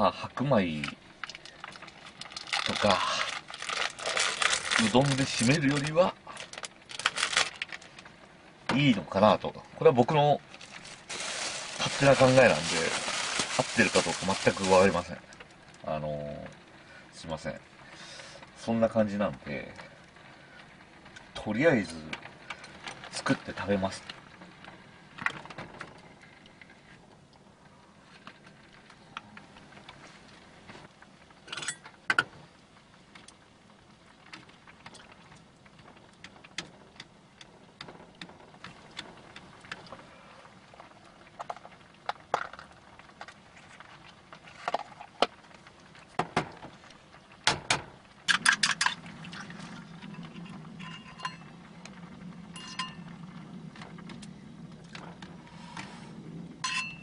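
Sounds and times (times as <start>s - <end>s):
steady low hum: 0.0s - 57.0s
cookware and utensils clinking: 50.8s - 51.5s, 52.6s - 53.0s, 56.6s - 57.0s.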